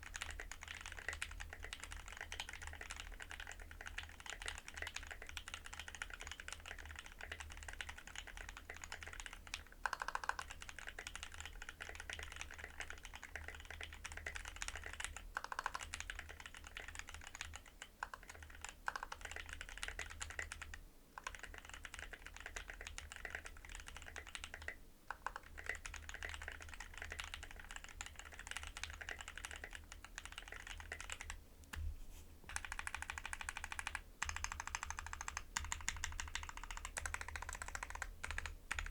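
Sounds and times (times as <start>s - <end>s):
mechanical keyboard typing: 0.0s - 31.4s, 32.5s - 38.9s.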